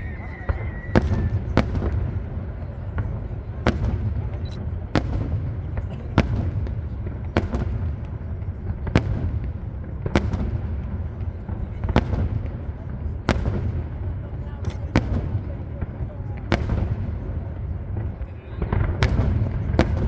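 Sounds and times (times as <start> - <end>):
low rumble of explosions: 0.0 - 20.0
firework shells bursting: 0.5 - 2.0.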